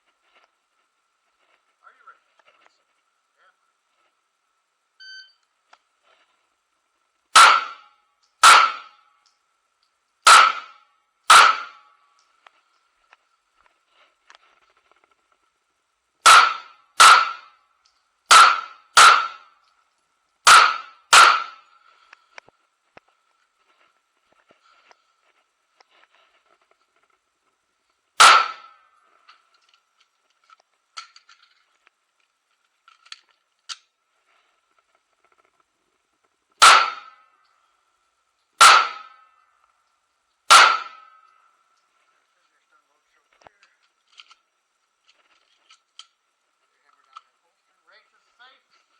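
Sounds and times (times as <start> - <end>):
pistol shots: 7.4 - 7.8, 8.4 - 8.9, 10.3 - 10.7, 11.3 - 11.8, 16.2 - 17.5, 18.3 - 19.4, 20.5 - 21.6, 28.2 - 28.7, 36.6 - 37.2, 38.6 - 39.1, 40.5 - 41.1.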